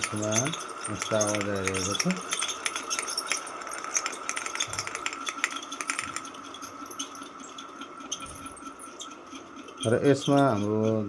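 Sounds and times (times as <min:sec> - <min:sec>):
rattling clicks: 0:00.0 - 0:10.7
ceiling fan squealing: 0:00.0 - 0:11.0.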